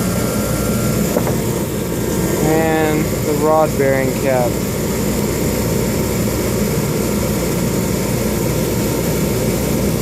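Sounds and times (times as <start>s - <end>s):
low machinery drone: 0.0s - 10.0s.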